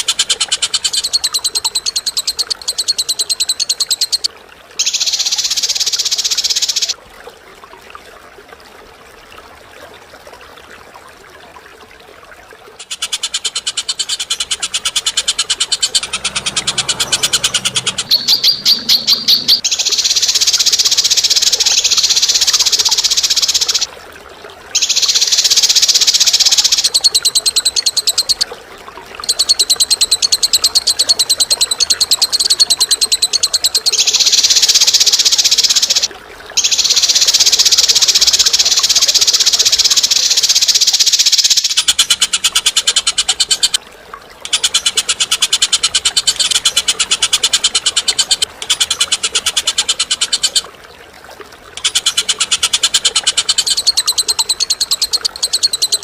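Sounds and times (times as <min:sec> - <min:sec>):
bird rattling trills: 0:00.0 - 0:07.0, 0:12.8 - 0:23.9, 0:29.2 - 0:43.8.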